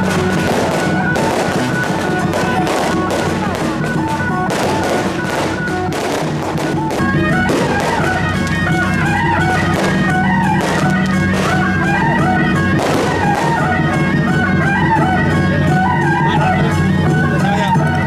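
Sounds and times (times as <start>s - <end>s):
loud music with quick melody: 0.0s - 18.0s
steady low drone: 0.0s - 18.0s.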